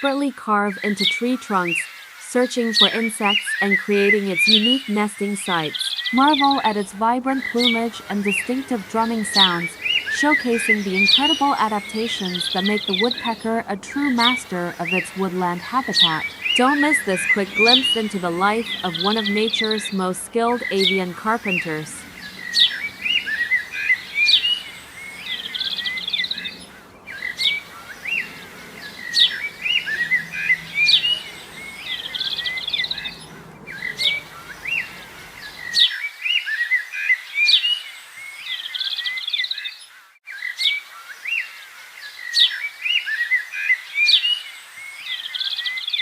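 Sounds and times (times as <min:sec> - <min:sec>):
songbirds chirping and singing: 0:00.6 - 0:36.4
faint low hum: 0:06.1 - 0:35.8.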